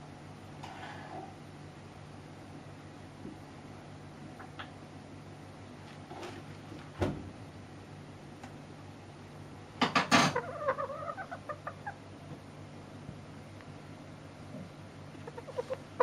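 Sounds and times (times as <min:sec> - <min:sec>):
cockerel clucking: 0:10.0 - 0:12.0, 0:15.1 - 0:16.0.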